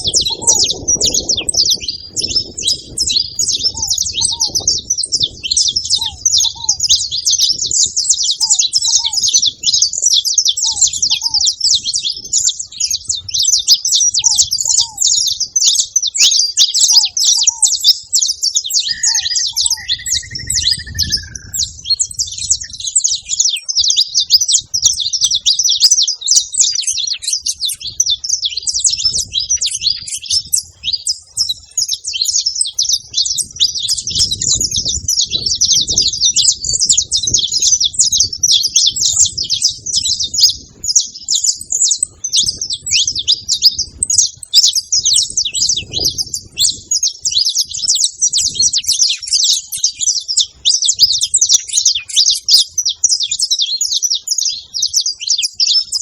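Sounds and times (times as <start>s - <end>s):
slurred bird whistle: 0.0s - 9.8s, 12.7s - 24.0s
finches chirping: 0.0s - 56.0s.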